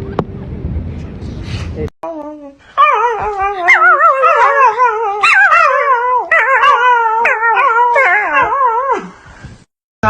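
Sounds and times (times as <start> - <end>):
dogs howling: 2.8 - 9.1.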